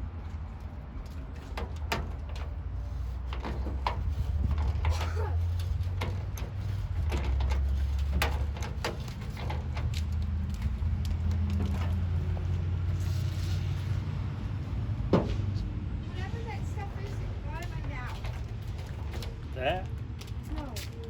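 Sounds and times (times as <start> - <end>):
sharp knocks and clicks: 1.0 - 12.2.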